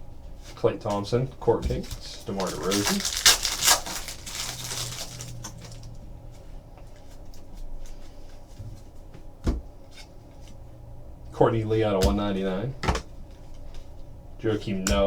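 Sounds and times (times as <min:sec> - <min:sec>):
cards shuffling: 0:01.6 - 0:06.0
card wrapper rustling: 0:01.7 - 0:06.0.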